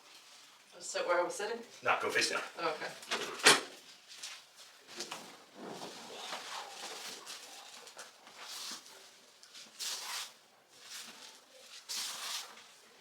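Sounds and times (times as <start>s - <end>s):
rustling on padded table: 3.8s - 12.8s.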